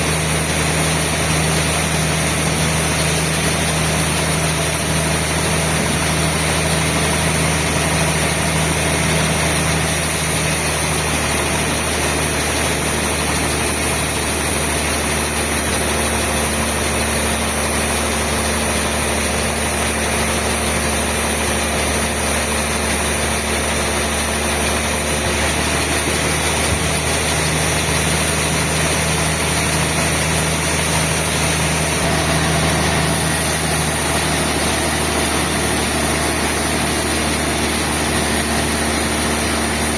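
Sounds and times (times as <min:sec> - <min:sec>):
sawmill machinery hum: 0:00.0 - 0:39.9.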